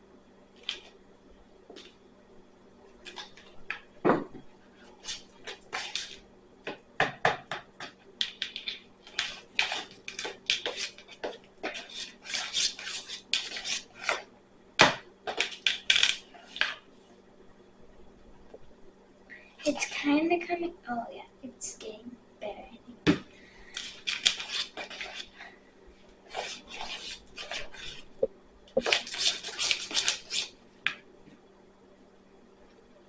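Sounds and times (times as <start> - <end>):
utensil scraping a bowl: 4.8 - 6.2, 8.5 - 14.3, 23.7 - 25.4, 26.2 - 28.2, 28.8 - 30.6.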